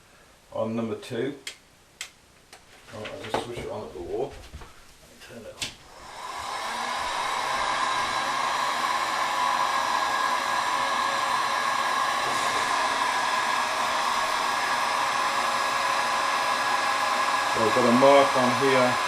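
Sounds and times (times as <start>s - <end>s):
heat gun blowing hum: 5.8s - 19.0s.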